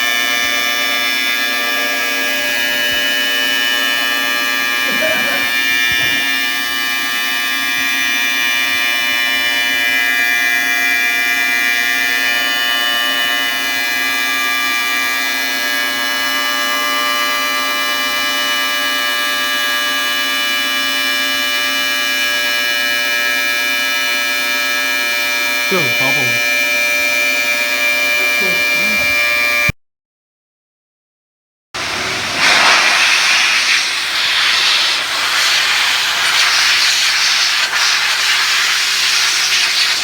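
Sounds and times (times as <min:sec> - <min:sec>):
ultrasonic cleaner whine: 0:00.0 - 0:07.8, 0:25.4 - 0:29.7, 0:31.8 - 0:40.0.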